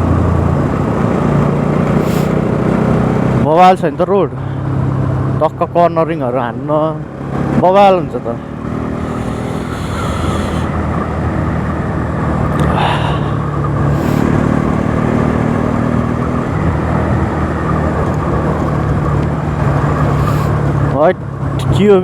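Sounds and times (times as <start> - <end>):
wind noise: 8.5 - 12.6.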